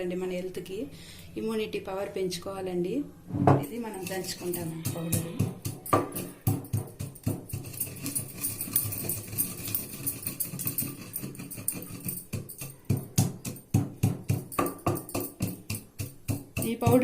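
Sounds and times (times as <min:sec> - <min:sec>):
pestle pounding in mortar: 0:04.0 - 0:17.0.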